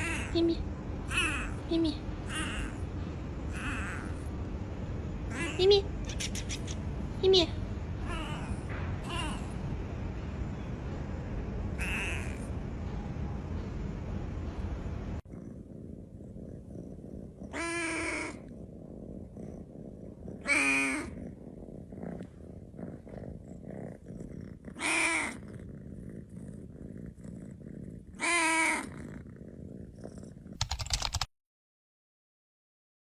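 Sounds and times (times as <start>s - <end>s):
cat meowing: 0.0s - 2.8s, 3.5s - 4.2s, 5.3s - 6.7s, 8.0s - 9.6s, 11.8s - 12.5s, 17.5s - 18.4s, 20.3s - 21.2s, 24.8s - 25.5s, 28.2s - 28.9s
steady low rumble: 0.0s - 28.2s.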